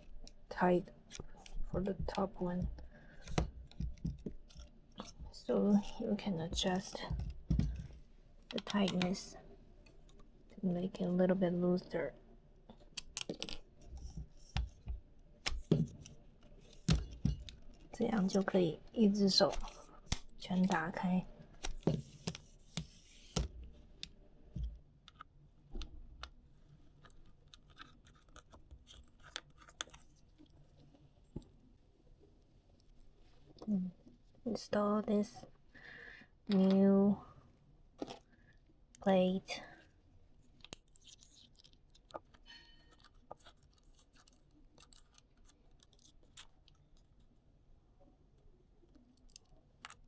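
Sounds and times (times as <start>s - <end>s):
faint clicks and handling: 19.4s - 31.6s, 40.4s - 47.3s, 48.9s - 50.0s.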